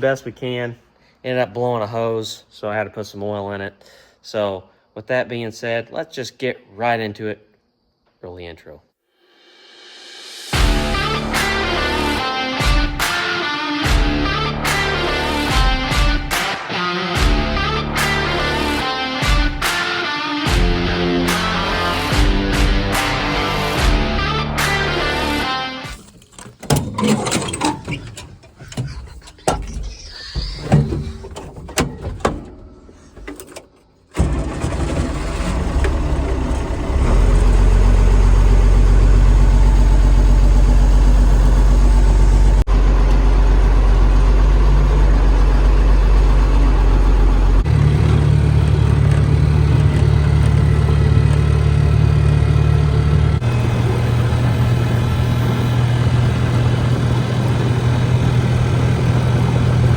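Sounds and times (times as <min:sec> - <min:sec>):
guitar music: 0:10.6 - 0:26.0
vehicle engine running: 0:34.4 - 0:59.9.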